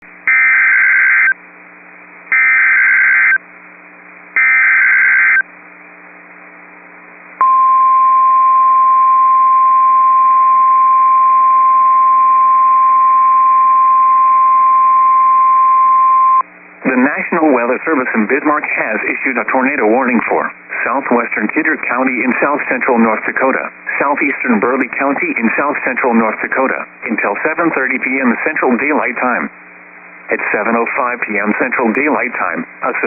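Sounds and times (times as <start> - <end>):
steady warning alarm tone: 0.3 - 1.4, 2.3 - 3.4, 4.4 - 5.4.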